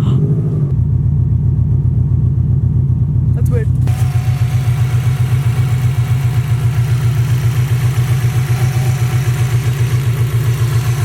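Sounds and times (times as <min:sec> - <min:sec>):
car engine idling roughly: 0:03.0 - 0:11.0.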